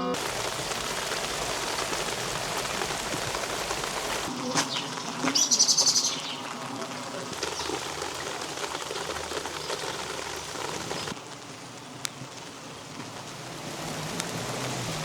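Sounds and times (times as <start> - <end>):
rain on stone streets: 0.0 - 15.0
bird chirping trill: 4.7 - 6.5.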